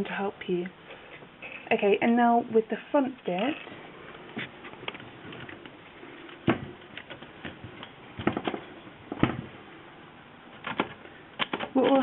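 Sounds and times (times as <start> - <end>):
typewriter clicks and knocks: 10.6 - 12.0.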